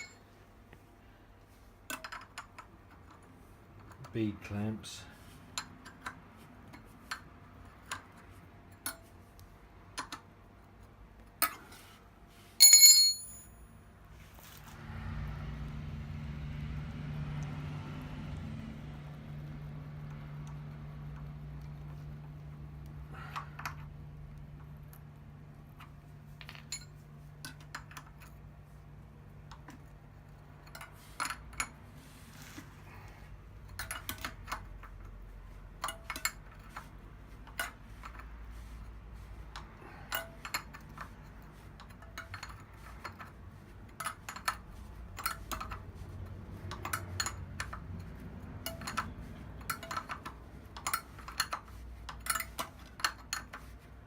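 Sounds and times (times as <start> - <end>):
spanner clicking on nuts: 33.7 - 38.3, 46.6 - 53.7.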